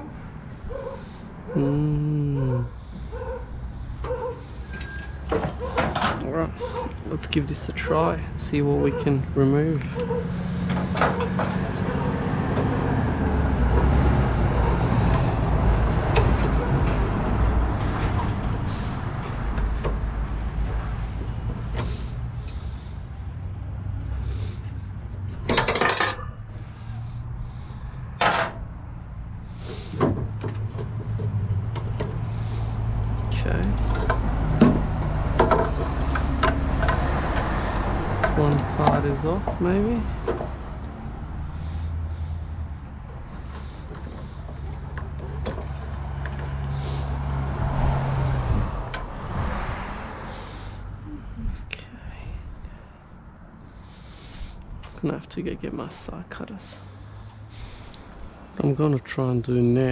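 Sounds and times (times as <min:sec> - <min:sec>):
vehicle engine humming: 0:00.0 - 0:59.9
metal clatter: 0:04.7 - 0:06.3, 0:25.1 - 0:26.4, 0:28.2 - 0:28.6, 0:33.8 - 0:37.5, 0:43.0 - 0:46.8
metal knocks and rattles: 0:04.8 - 0:06.3, 0:10.5 - 0:12.8, 0:25.1 - 0:26.4, 0:29.7 - 0:33.0, 0:33.7 - 0:40.7, 0:43.0 - 0:47.6.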